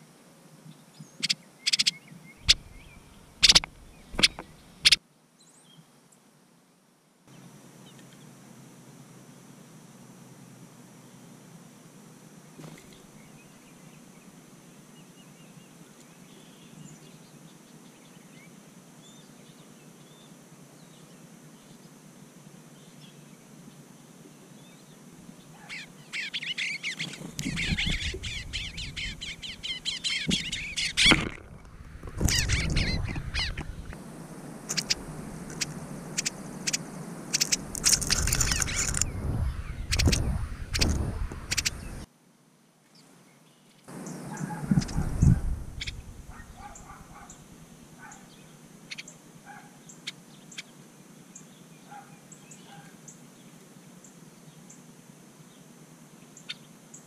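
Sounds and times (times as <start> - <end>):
songbirds chirping: 0.0 - 6.3, 12.4 - 42.1, 42.8 - 57.0
low rumble: 37.6 - 42.1, 44.8 - 46.6.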